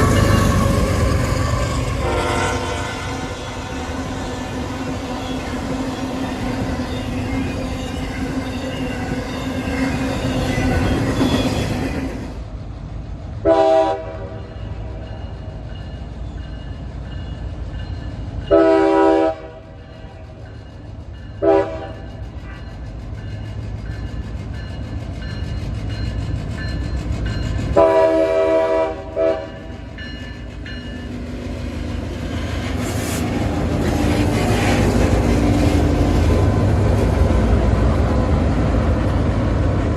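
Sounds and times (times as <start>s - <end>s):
diesel locomotive rumbling: 0.0s - 39.9s
train air horn blasts: 1.9s - 3.6s, 13.4s - 14.5s, 18.5s - 19.8s, 21.4s - 22.2s, 27.8s - 29.7s.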